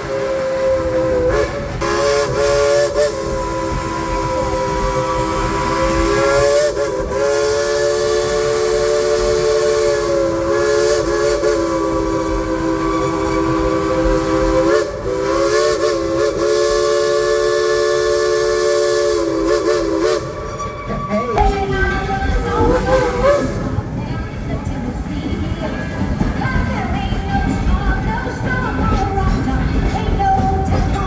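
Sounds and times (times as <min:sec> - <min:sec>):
hiss of steam: 0:00.0 - 0:20.6
steam train whistle blowing: 0:00.0 - 0:24.3.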